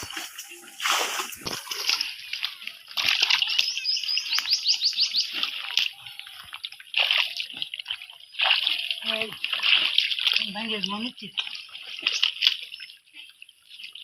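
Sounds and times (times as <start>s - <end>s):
water sloshing and splashing: 0.0s - 14.0s.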